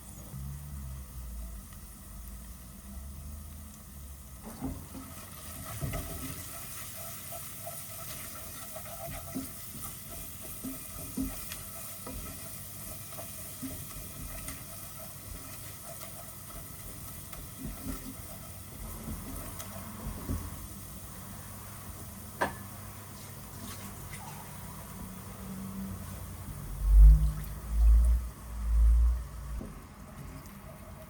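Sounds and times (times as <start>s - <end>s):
food sizzling in a frying pan: 0.0s - 28.1s
utensil scraping a pan: 5.5s - 20.5s.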